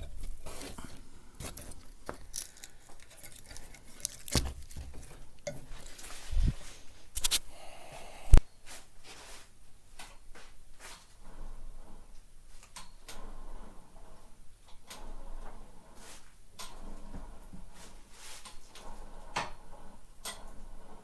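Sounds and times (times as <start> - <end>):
small clicks and knocks: 0.0 - 6.2.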